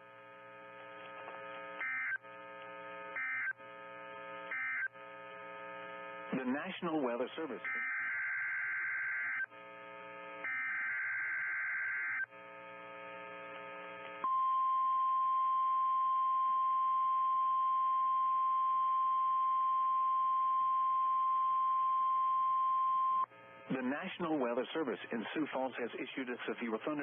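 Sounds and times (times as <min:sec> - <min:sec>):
quiet buzzing hum: 0:00.0 - 0:27.0
steady warning alarm tone: 0:01.8 - 0:02.3, 0:03.1 - 0:03.6, 0:04.4 - 0:05.0, 0:07.4 - 0:09.5, 0:10.3 - 0:12.3.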